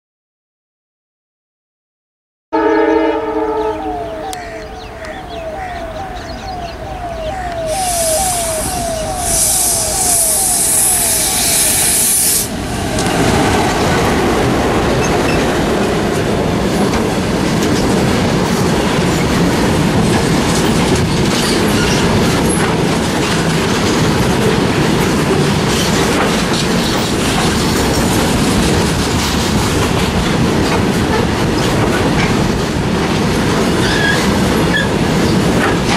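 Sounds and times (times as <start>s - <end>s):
train horn: 2.6s - 12.5s
repeating tone: 3.6s - 13.0s
loud hiss of locomotives: 7.7s - 13.2s.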